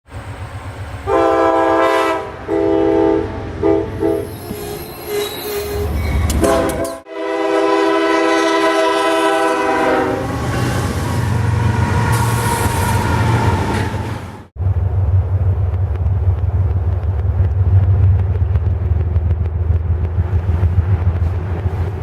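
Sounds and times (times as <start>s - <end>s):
train rumbling on rails: 0.0s - 22.0s
locomotive air horn blasts: 1.1s - 13.0s.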